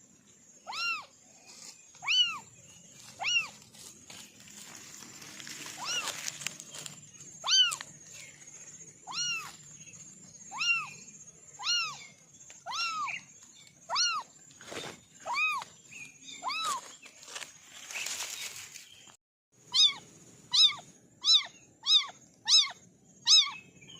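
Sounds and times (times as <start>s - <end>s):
kitten mewing: 9.1s - 9.5s, 10.6s - 10.9s, 11.6s - 12.0s, 12.7s - 13.2s, 19.7s - 23.6s.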